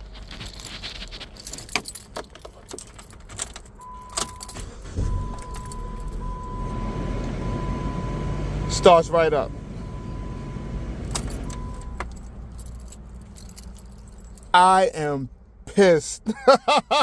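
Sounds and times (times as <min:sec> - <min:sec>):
keys jangling and clicking: 0:00.0 - 0:06.4, 0:11.0 - 0:14.6
car engine cranking and starting: 0:00.0 - 0:14.5.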